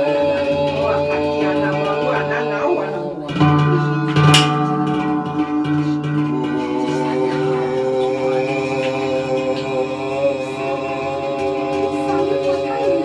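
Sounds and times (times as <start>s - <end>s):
plucked string notes: 0.0s - 13.0s
sustained drone tones: 0.0s - 13.0s
bright high-pitched strike: 3.3s - 9.8s.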